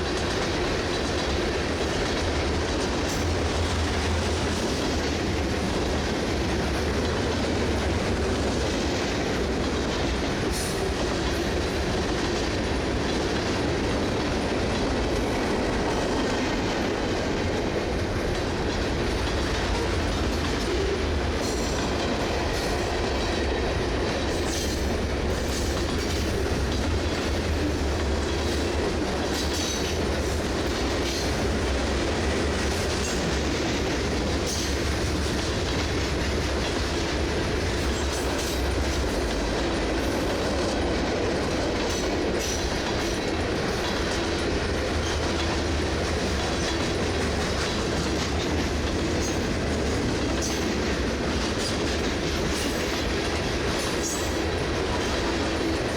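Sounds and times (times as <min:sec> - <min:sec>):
train wheels clattering on rails: 0:00.0 - 0:55.9.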